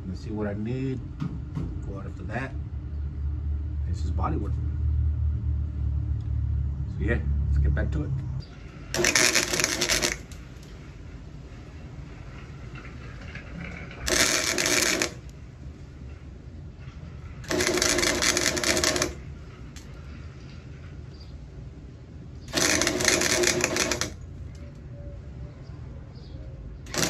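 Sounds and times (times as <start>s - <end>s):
welding arc crackling: 8.8s - 10.8s, 13.8s - 15.4s, 17.3s - 19.9s, 22.5s - 24.2s.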